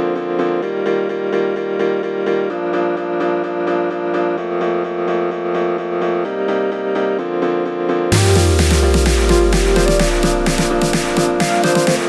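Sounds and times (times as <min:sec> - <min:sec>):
upbeat piano tune with beat: 0:08.1 - 0:12.0.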